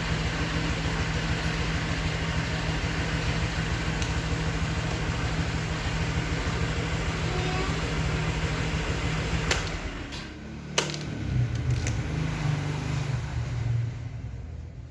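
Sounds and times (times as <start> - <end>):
scooter engine idling: 0.0 - 11.4.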